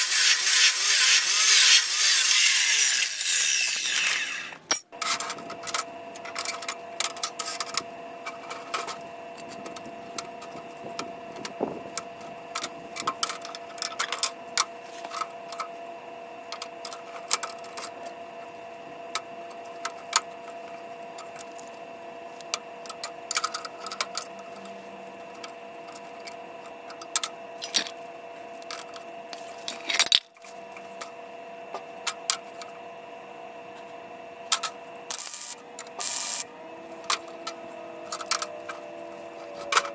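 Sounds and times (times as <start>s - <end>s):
tools and parts clicking: 0.0s - 14.4s, 25.4s - 28.0s, 28.6s - 30.4s, 37.0s - 38.8s, 39.4s - 39.9s
two-tone hum: 22.9s - 28.0s, 33.5s - 39.9s.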